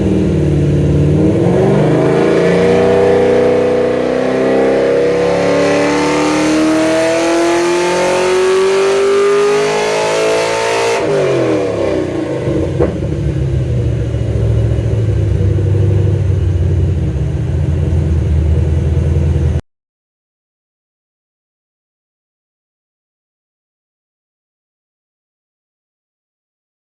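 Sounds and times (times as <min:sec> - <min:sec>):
engine idling: 0:00.0 - 0:04.2, 0:11.1 - 0:19.6
exhaust crack: 0:00.0 - 0:09.6, 0:11.0 - 0:19.6
car engine revving: 0:00.0 - 0:19.6.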